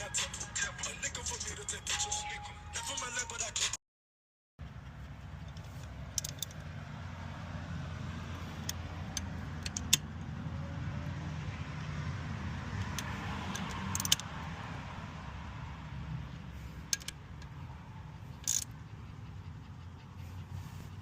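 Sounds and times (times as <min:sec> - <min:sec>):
hand pump metallic clicks: 0:05.4 - 0:06.7, 0:08.6 - 0:10.1, 0:12.8 - 0:14.3, 0:16.8 - 0:17.6, 0:18.4 - 0:18.8.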